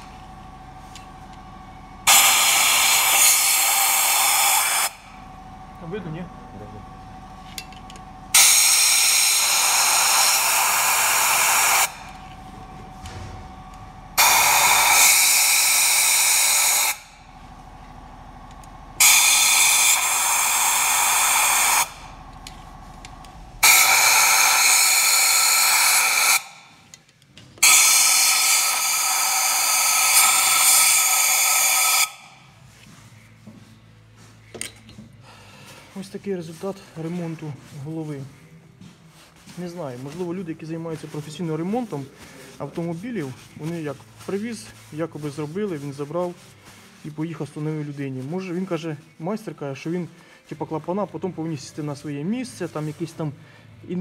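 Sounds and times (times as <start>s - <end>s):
air gun hissing: 2.0s - 5.2s, 8.3s - 17.4s, 18.5s - 26.9s, 27.6s - 32.5s.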